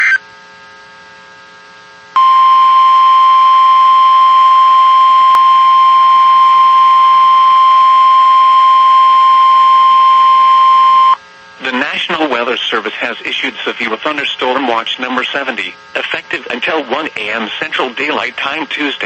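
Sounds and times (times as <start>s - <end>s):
faint radio static hum: 0.0s - 19.0s
high-pitched alarm tone: 2.2s - 11.2s.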